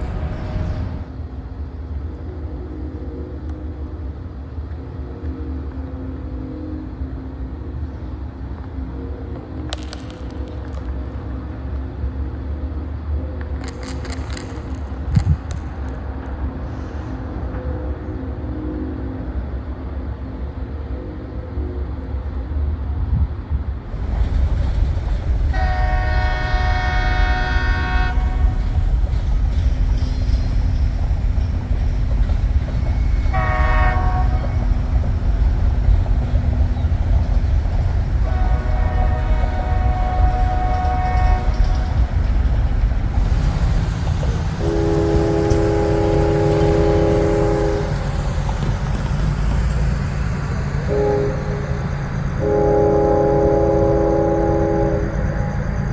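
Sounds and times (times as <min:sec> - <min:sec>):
distant train horns: 0:00.0 - 0:01.2, 0:08.9 - 0:10.9, 0:23.9 - 0:55.9
low rumble: 0:23.8 - 0:52.4.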